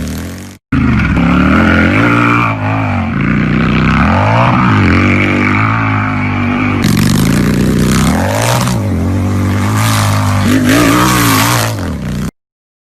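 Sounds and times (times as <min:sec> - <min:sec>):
motorcycle throttle blips: 0:00.0 - 0:12.3
motorcycle engine idling: 0:06.3 - 0:10.6.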